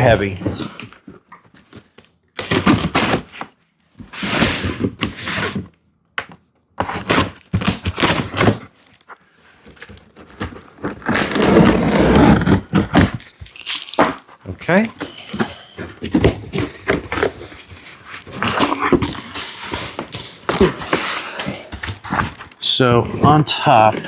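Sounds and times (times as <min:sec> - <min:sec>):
continuous scraping of cardboard: 0:00.0 - 0:05.8, 0:06.8 - 0:13.8, 0:14.4 - 0:24.0
cardboard box being opened: 0:06.8 - 0:08.8, 0:09.4 - 0:14.2, 0:14.8 - 0:22.6.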